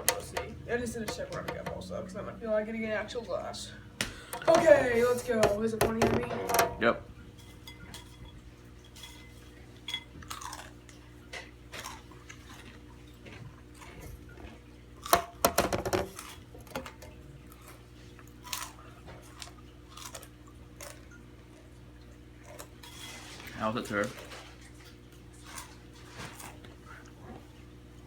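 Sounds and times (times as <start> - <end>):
bowl clinking: 0.0 - 10.4
crunching and chewing chips: 9.0 - 15.4, 16.1 - 28.0.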